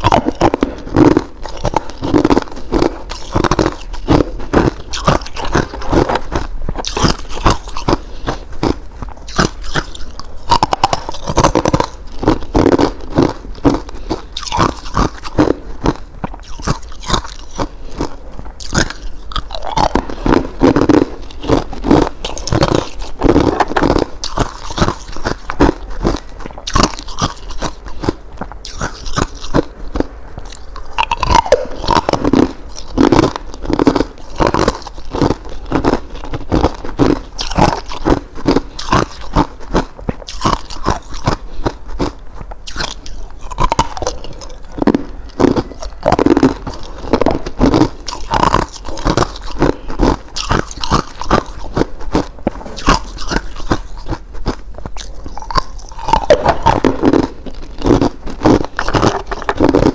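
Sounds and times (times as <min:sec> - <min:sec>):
ice crunching between teeth: 0:00.0 - 0:59.9.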